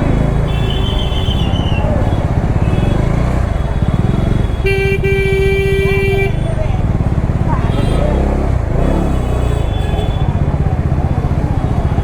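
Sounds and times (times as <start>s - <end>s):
motorcycle engine running: 0.0s - 12.0s
vehicle horn honking: 0.5s - 6.6s, 7.5s - 10.4s.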